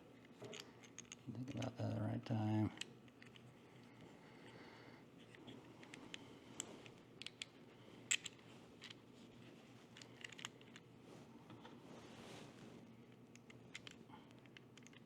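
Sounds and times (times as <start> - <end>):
small screws and plastic clicking: 2.7 - 3.5, 5.2 - 9.0, 10.0 - 10.9, 13.1 - 15.0.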